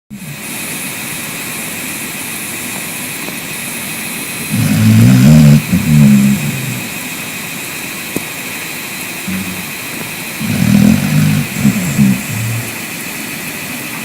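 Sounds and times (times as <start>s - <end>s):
background hiss: 0.2s - 14.0s
pet snoring: 4.4s - 7.1s, 9.3s - 12.9s.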